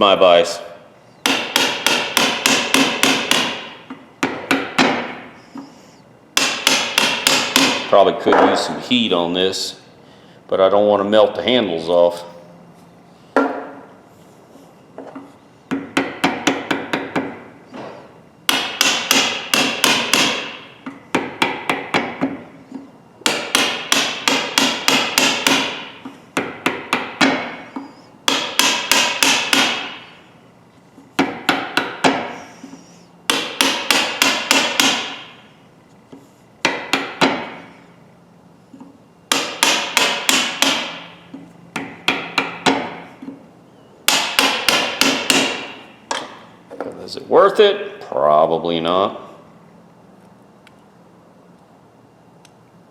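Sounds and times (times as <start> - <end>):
hammer striking metal: 1.2 - 5.2, 6.4 - 7.9, 18.5 - 22.2, 23.2 - 27.7, 28.3 - 30.1, 33.3 - 35.4, 39.3 - 41.2, 44.1 - 46.4.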